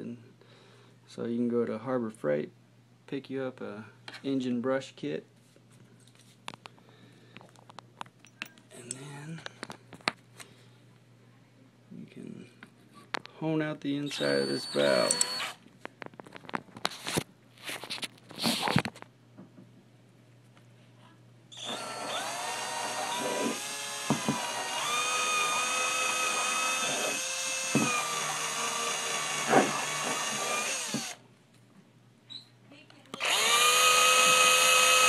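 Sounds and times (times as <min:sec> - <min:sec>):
electric drill whining: 0:14.1 - 0:15.6, 0:21.5 - 0:31.2, 0:33.2 - 0:35.0.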